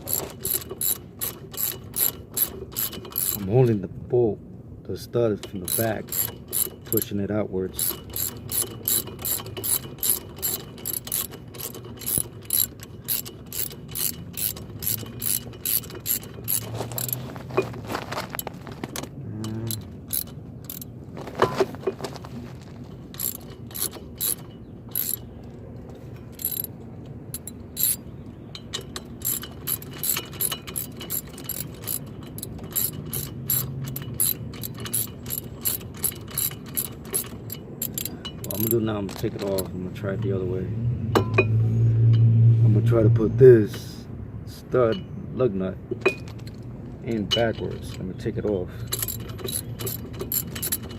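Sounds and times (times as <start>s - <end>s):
ratchet wrench clicking: 0.0s - 3.5s, 5.4s - 17.2s, 19.4s - 20.9s, 23.1s - 25.4s, 26.2s - 40.4s, 48.8s - 50.9s.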